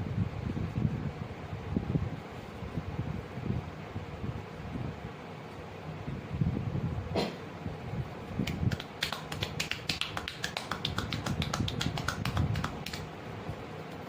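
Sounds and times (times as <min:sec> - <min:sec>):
hands tapping and clicking: 0:08.5 - 0:13.1.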